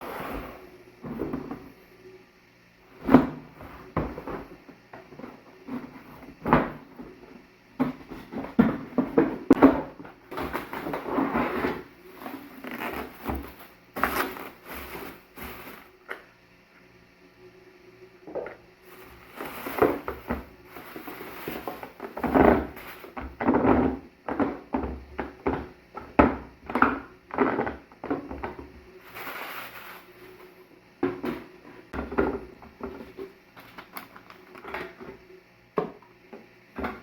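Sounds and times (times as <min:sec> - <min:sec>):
packaging rustling: 0:12.1 - 0:16.0.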